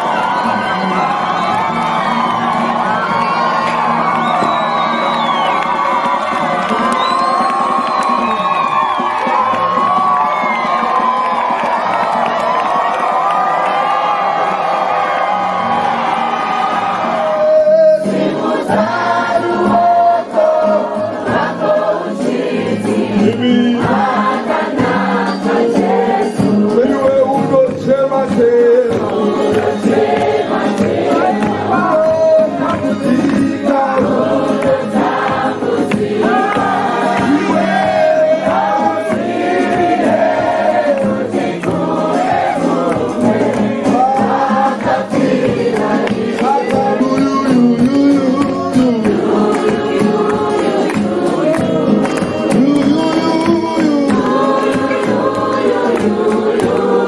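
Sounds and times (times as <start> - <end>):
choir singing a hymn: 17.9 - 27.0, 28.9 - 31.9, 33.4 - 47.0, 49.1 - 52.5, 54.1 - 57.0.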